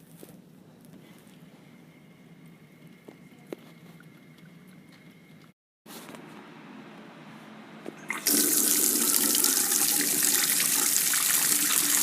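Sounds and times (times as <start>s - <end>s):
water running into basin: 8.0s - 12.0s
faucet turned on: 8.1s - 12.0s.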